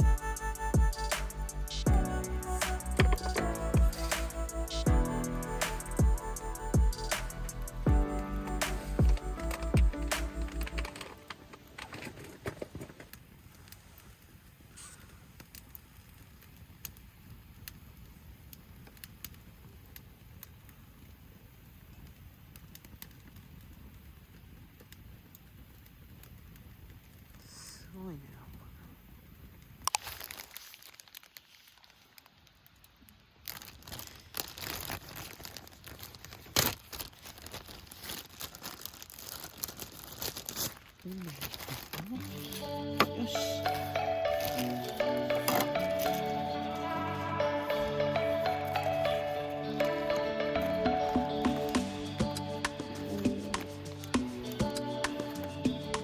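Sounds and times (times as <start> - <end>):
wood fire crackling: 0.0 - 56.0
crinkling and rustling handling: 10.3 - 16.6, 29.8 - 46.3.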